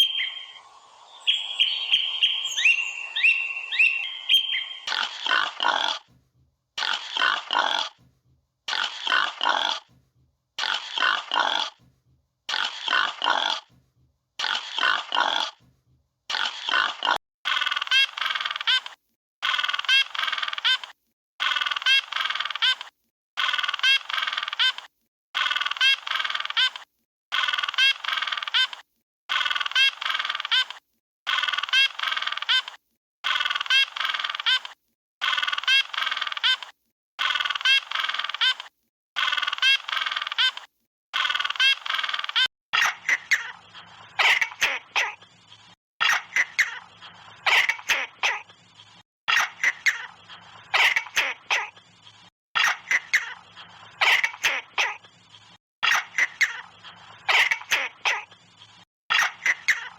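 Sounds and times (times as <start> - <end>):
geese honking: 0.0 - 5.0
high chirping tones: 0.0 - 5.1.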